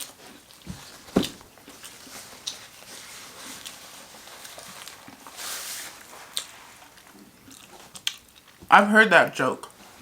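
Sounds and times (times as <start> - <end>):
person chewing a sandwich: 0.0 - 5.4, 6.0 - 8.6.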